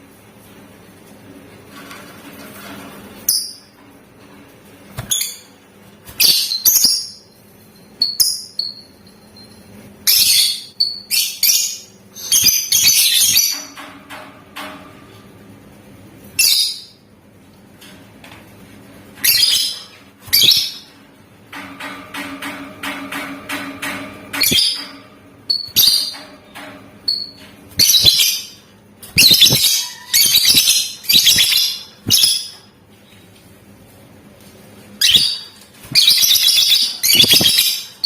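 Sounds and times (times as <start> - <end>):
lovebird shrill chattering chirps: 27.8 - 28.5, 29.2 - 32.6.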